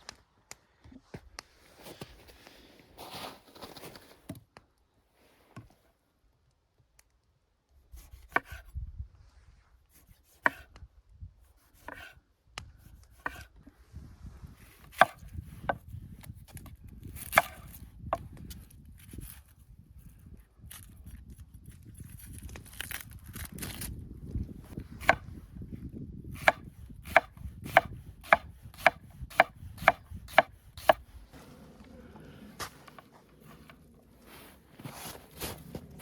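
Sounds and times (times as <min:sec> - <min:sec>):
blade chopping wood: 0:08.2 - 0:08.6, 0:10.3 - 0:10.7, 0:11.8 - 0:12.1, 0:13.1 - 0:13.5, 0:14.8 - 0:15.9, 0:16.5 - 0:18.3, 0:24.7 - 0:25.4, 0:26.3 - 0:31.1
rustling: 0:31.2 - 0:36.0.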